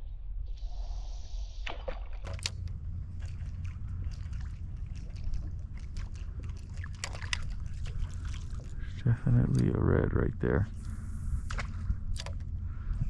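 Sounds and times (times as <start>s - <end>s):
low rumble: 0.0s - 13.0s
water lapping against kayak hull: 2.2s - 9.7s, 10.7s - 13.0s.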